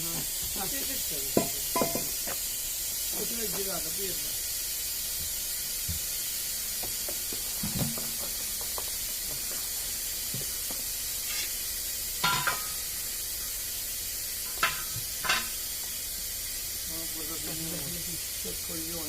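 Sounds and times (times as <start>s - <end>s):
hiss of air: 0.0s - 19.0s
metal clinks and knocks: 1.4s - 2.4s.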